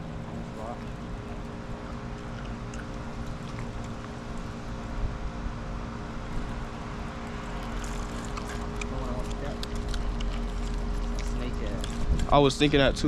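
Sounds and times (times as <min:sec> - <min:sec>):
steady mechanical hum: 0:00.0 - 0:13.0
wind rumbling on microphone: 0:09.8 - 0:13.0.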